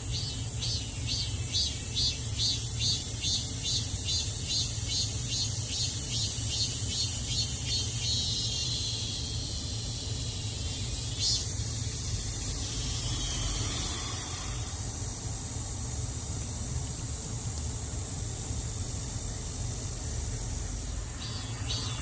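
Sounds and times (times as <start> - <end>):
cicadas buzzing: 0.0 - 22.0
steady low hum: 0.0 - 22.0
higher buzz: 11.2 - 14.9.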